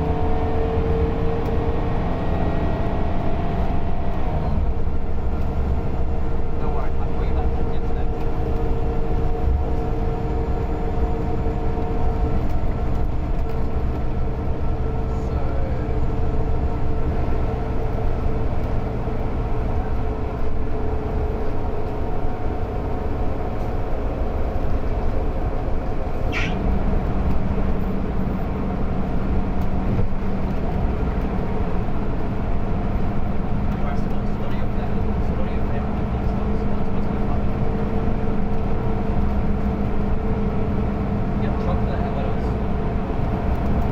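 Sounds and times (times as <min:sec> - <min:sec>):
bus engine drone: 0:00.0 - 0:43.9.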